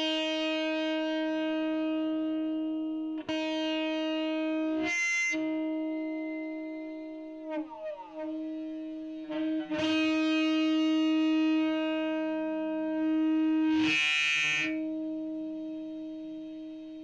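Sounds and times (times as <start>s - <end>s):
overdriven electric guitar note: 3.4s - 16.8s.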